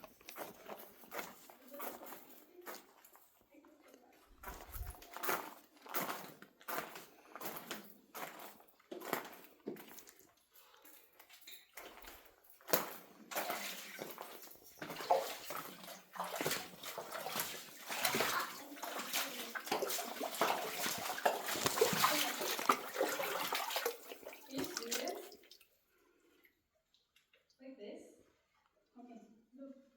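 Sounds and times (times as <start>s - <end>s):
water sloshing and splashing: 4.5s - 5.1s, 11.2s - 25.8s.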